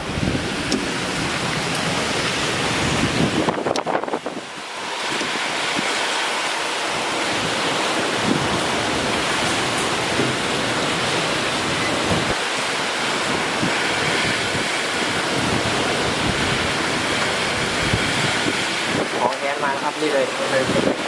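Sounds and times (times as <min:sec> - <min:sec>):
strong wind rushing: 0:00.0 - 0:21.0
wind gusts buffeting microphone: 0:00.0 - 0:21.0.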